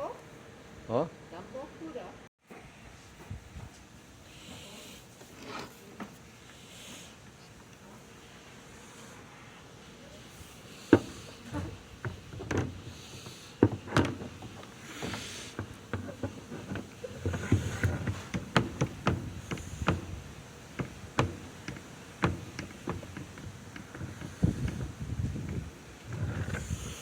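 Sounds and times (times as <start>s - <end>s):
clicks taps and knocks: 15.5s - 26.2s.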